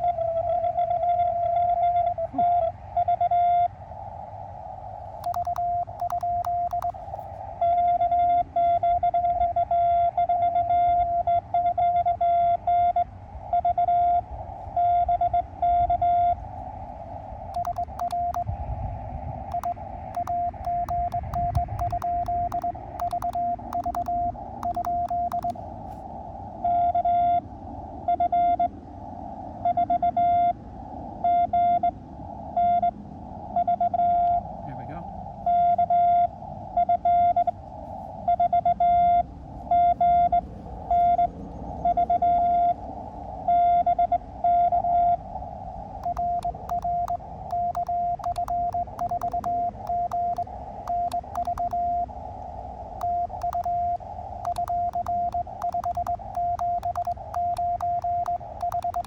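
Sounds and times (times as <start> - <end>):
morse code beeps: 5.2 - 7.0, 17.6 - 18.5, 19.5 - 25.6, 46.0 - 52.0, 53.0 - 53.8, 54.4 - 59.0
weak morse code reply: 5.2 - 7.0, 17.6 - 18.5, 19.5 - 25.6, 46.0 - 51.8, 53.0 - 53.7, 54.5 - 59.0
faint clicks: 5.2 - 7.3, 17.6 - 18.5, 19.5 - 25.6, 46.0 - 51.8, 53.0 - 53.8, 54.4 - 59.0.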